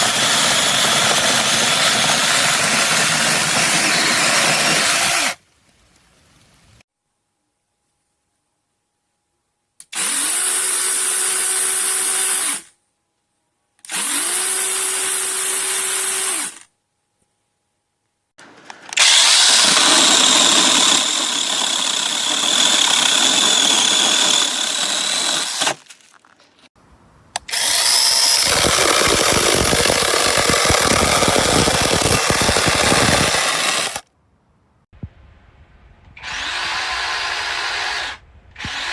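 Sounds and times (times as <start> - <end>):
chainsaw cutting wood: 0.0 - 5.4, 9.9 - 12.7, 13.9 - 16.7, 18.9 - 26.0, 27.4 - 34.0, 36.2 - 38.9
electric chainsaw whining: 0.0 - 5.4, 18.9 - 25.8, 27.4 - 34.0, 36.2 - 38.9.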